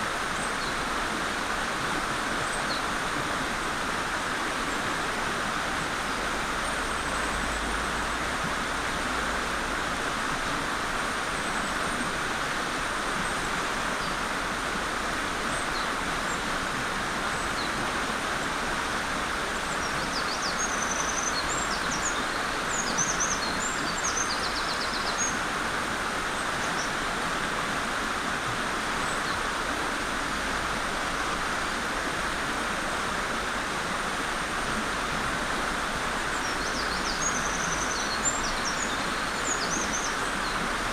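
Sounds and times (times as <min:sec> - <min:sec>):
stream rushing over rocks: 0:00.0 - 0:40.9.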